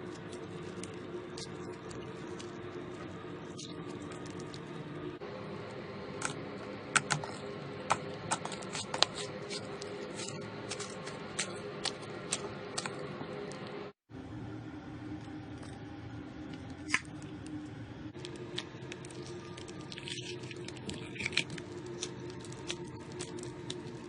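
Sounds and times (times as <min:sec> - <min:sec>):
slime clicking and crackling: 0:18.2 - 0:24.0.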